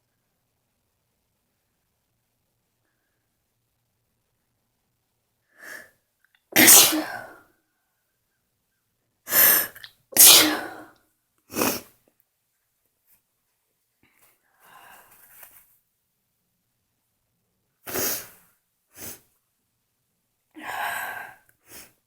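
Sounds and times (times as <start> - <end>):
person sneezing: 6.6 - 7.4, 9.3 - 10.9.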